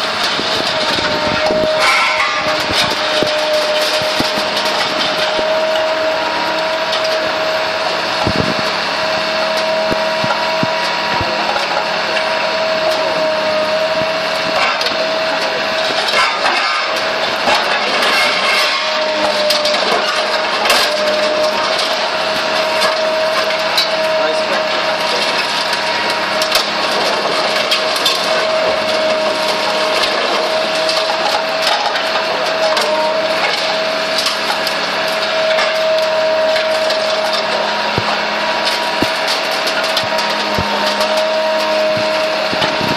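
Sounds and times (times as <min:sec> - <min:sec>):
constant high hum: 0:00.0 - 0:42.9
factory machinery din: 0:00.0 - 0:42.9
machinery clicks and knocks: 0:08.2 - 0:08.8, 0:09.5 - 0:42.9.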